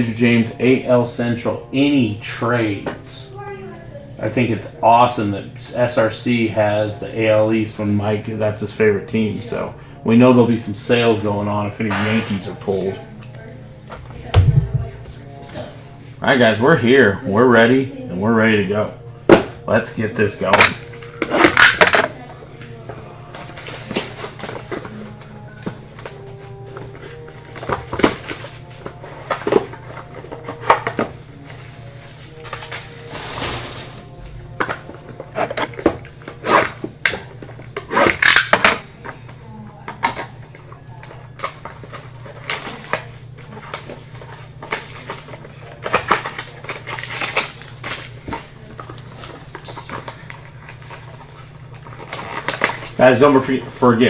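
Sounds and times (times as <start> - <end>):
steady low hum: 6.4 - 54.0
card packaging clicks and crinkling: 23.3 - 38.6, 40.1 - 53.8.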